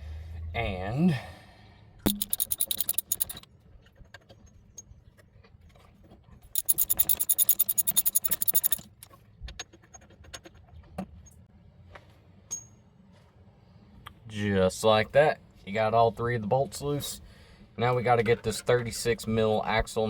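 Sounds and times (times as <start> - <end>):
light clicks and clinks: 2.1 - 3.4, 6.6 - 8.9
ratchet wrench clicking: 2.1 - 3.4, 6.6 - 8.8.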